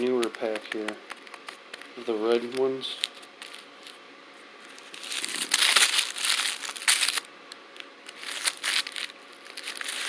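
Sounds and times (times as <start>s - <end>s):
firecracker wrappers crinkling: 2.4s - 4.0s, 4.7s - 7.3s, 8.0s - 10.0s.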